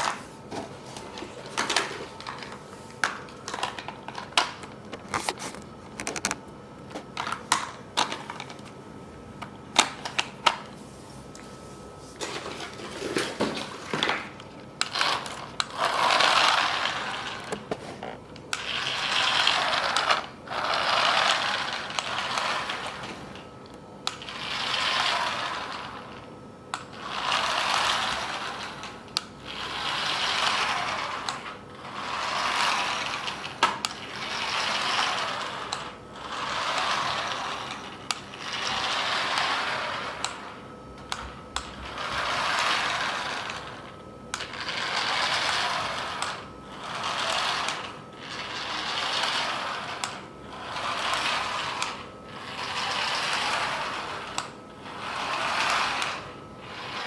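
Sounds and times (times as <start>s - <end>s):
toy car motor whirring: 14.8s - 17.6s, 18.5s - 23.3s, 24.1s - 57.0s.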